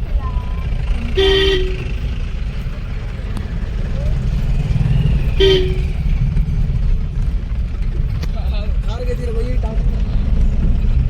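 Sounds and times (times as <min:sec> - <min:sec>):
vehicle rumble: 0:00.0 - 0:11.0
car horn toot: 0:00.8 - 0:02.5, 0:05.2 - 0:06.2.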